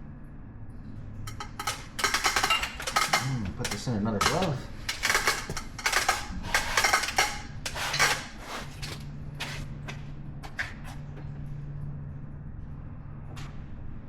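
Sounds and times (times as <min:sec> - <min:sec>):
low steady hum: 0:00.0 - 0:14.0
metal parts clinking: 0:01.3 - 0:08.4.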